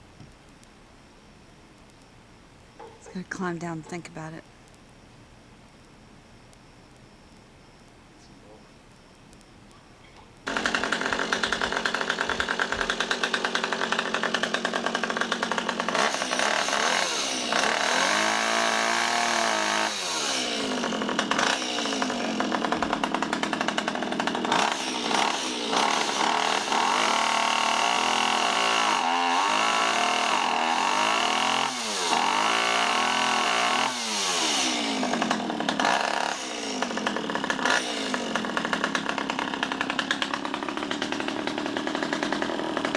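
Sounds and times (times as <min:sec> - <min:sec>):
chainsaw revving and cutting wood: 0:10.4 - 0:42.9.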